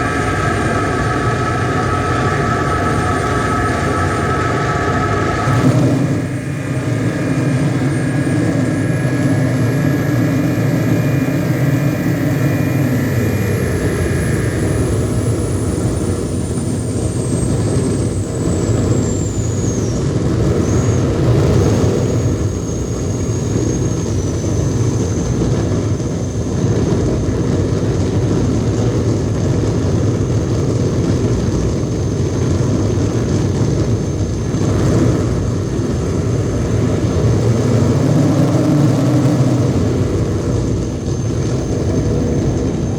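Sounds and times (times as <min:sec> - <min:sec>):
held mid-range tones: 0:00.0 - 0:16.6
dense low electronic drone: 0:00.0 - 0:18.8
thin high whistle gliding: 0:00.0 - 0:26.5, 0:31.9 - 0:42.9.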